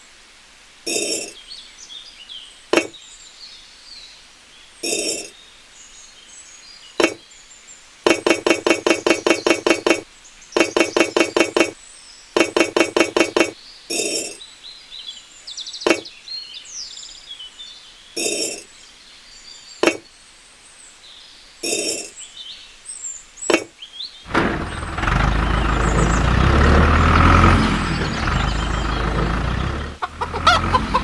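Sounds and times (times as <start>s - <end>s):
sharp clicks and short knocks: 2.7s - 3.0s, 7.0s - 7.2s, 8.1s - 10.0s, 10.6s - 11.8s, 12.4s - 14.4s, 15.9s - 16.1s, 19.8s - 20.0s, 23.5s - 23.7s
rapid light clinking taps: 8.1s - 10.0s, 10.6s - 11.8s, 12.4s - 14.4s.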